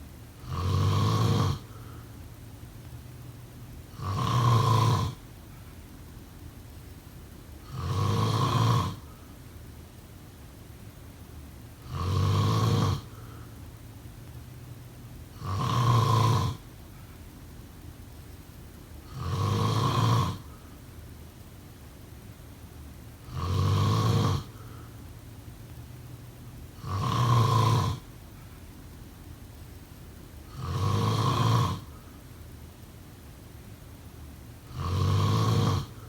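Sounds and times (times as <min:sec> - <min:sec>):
person snoring: 0:00.4 - 0:02.0, 0:03.9 - 0:05.2, 0:07.6 - 0:09.2, 0:11.8 - 0:13.6, 0:15.3 - 0:16.7, 0:19.1 - 0:20.6, 0:23.2 - 0:25.0, 0:26.8 - 0:28.1, 0:30.5 - 0:32.1, 0:34.7 - 0:36.0.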